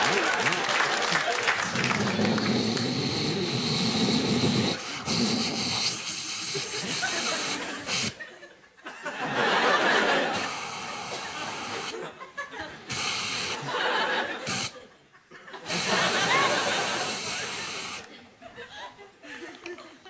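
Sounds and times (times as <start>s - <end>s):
man making hissing sounds: 1.8s - 8.2s, 10.3s - 12.0s, 12.9s - 13.7s, 14.4s - 14.8s, 15.7s - 18.1s.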